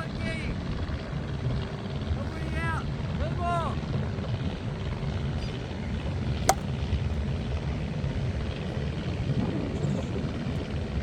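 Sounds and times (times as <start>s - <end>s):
wind on microphone: 0.0s - 11.0s
plastic ball being struck: 6.4s - 6.7s.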